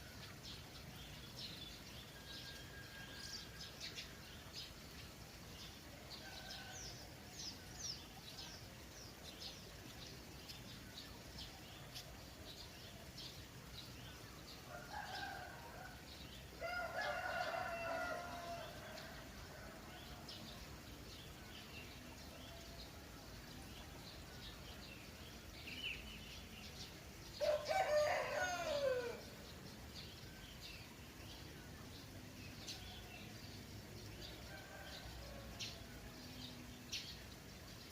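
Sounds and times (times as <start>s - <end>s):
small birds chirping: 0.0s - 15.5s
trickling water: 0.0s - 19.5s
rooster crowing: 16.6s - 19.0s, 27.4s - 29.2s.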